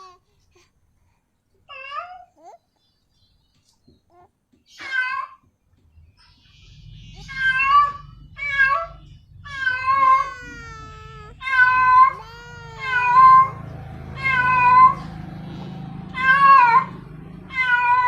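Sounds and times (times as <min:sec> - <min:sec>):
cat meowing loudly: 0:14.2 - 0:15.0.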